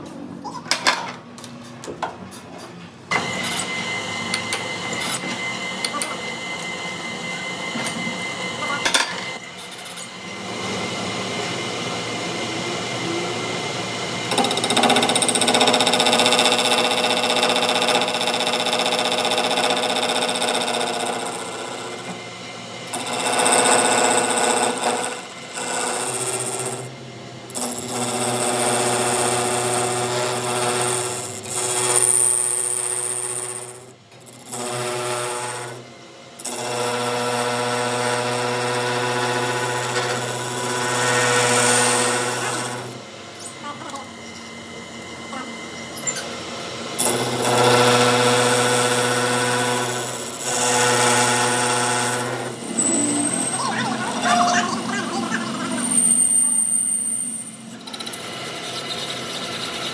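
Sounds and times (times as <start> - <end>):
power tool machine whine: 3.1 - 26.9, 36.4 - 59.9.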